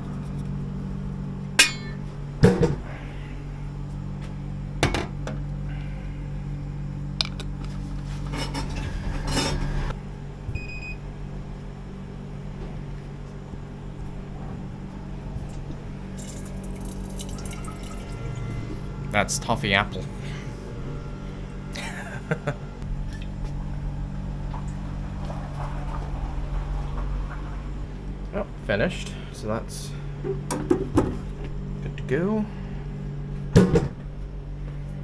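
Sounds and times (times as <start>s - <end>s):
vending machine hum: 0.0s - 35.0s
glass bottle clinking: 1.6s - 2.0s, 16.2s - 18.2s.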